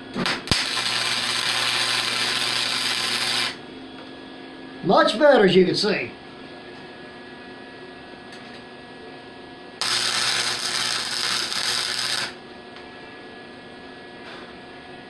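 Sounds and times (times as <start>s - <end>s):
welding arc crackling: 0.2s - 3.6s, 9.8s - 12.4s.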